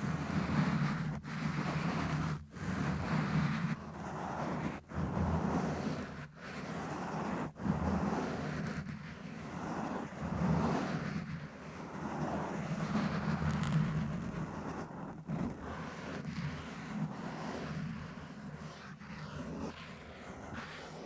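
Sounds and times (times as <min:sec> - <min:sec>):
microphone scratching: 0:13.1 - 0:14.2.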